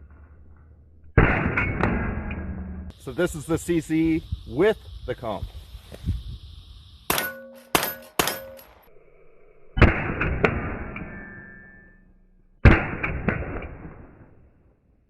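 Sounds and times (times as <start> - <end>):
pistol shots: 7.1 - 8.7
metallic clangs ringing: 7.1 - 8.9, 10.7 - 12.5.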